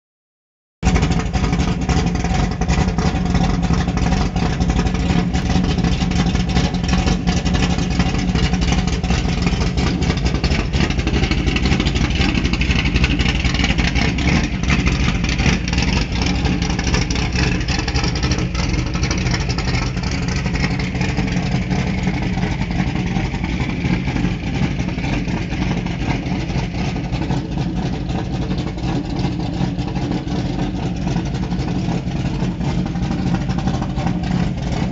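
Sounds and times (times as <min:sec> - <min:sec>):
car engine running: 0:00.8 - 0:34.9.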